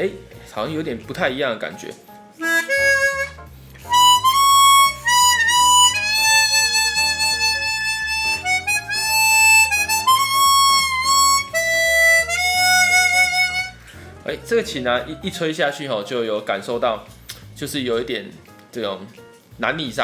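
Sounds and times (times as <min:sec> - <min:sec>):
harmonica melody: 0:02.2 - 0:13.9.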